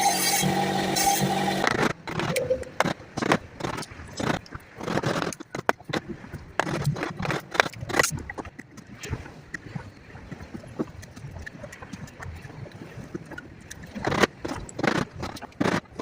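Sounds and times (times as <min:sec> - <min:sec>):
power tool stopping: 0:00.0 - 0:01.7.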